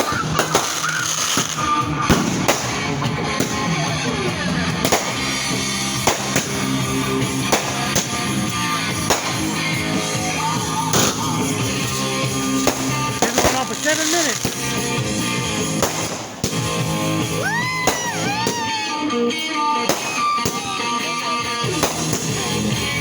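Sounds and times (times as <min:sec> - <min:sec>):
firework bangs: 0:00.0 - 0:18.9, 0:19.8 - 0:23.0
music playing: 0:00.0 - 0:23.0.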